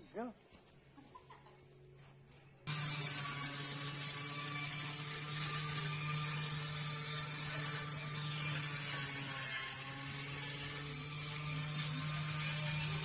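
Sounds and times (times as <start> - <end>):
grass cutter motor whirring: 2.7 - 13.0.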